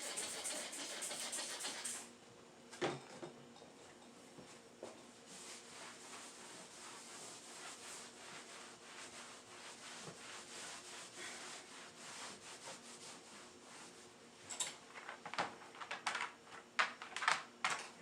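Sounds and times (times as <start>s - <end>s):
rag scrubbing strokes: 0.0s - 2.0s, 5.3s - 14.1s.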